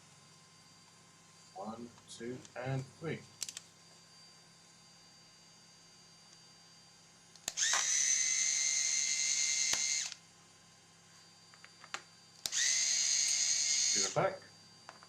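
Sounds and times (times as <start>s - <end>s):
electric screwdriver whine: 7.4s - 10.2s, 12.4s - 14.3s.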